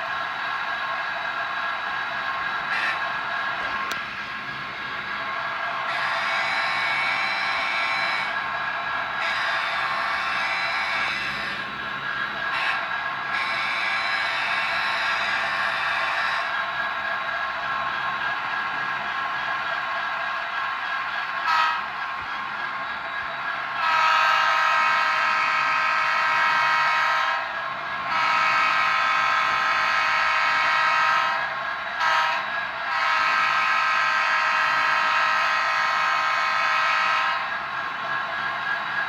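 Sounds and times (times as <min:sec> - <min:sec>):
model train horn blasts: 0:05.9 - 0:08.3, 0:09.2 - 0:11.4, 0:12.5 - 0:16.4, 0:21.4 - 0:21.9, 0:23.8 - 0:27.4, 0:28.0 - 0:31.4, 0:32.0 - 0:37.4.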